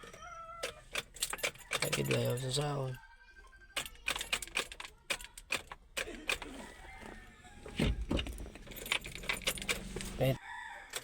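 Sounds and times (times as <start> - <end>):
car keys jangling: 0.9 - 2.7, 8.1 - 10.4.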